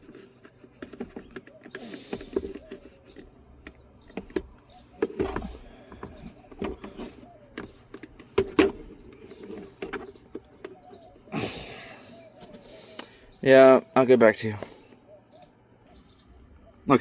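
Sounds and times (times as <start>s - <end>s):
plastic parts clicking and rattling: 0.0s - 11.0s.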